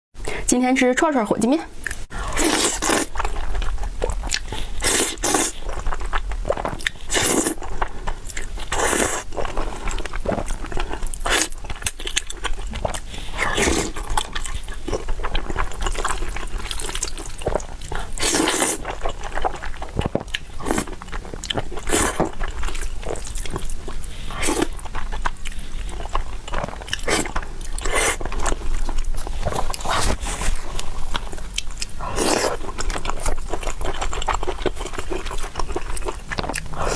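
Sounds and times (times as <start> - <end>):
person chewing and biting: 1.8 - 36.9
slurping noises: 4.1 - 5.8, 6.4 - 11.6, 26.6 - 33.4.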